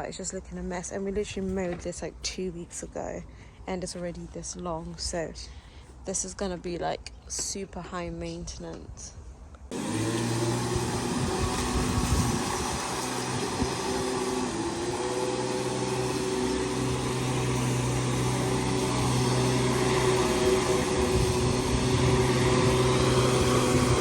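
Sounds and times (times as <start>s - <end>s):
lawn mower running: 9.7s - 24.0s.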